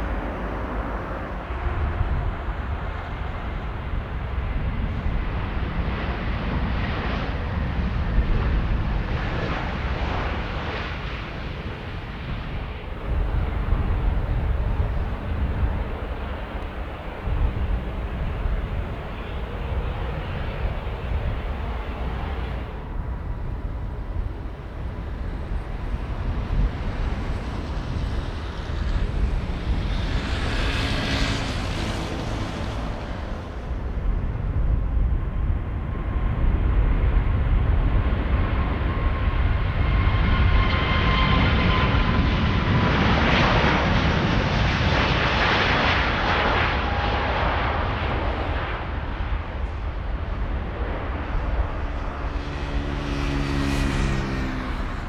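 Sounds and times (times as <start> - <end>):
jet engines rumbling: 0.0 - 55.0
jet engine whine falling in pitch: 7.5 - 34.6.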